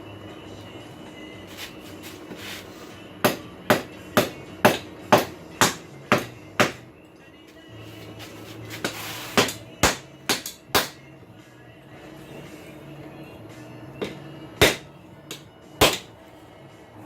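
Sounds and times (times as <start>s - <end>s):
hammer striking steel on anvil: 3.2s - 6.8s, 8.8s - 11.0s, 14.0s - 16.1s.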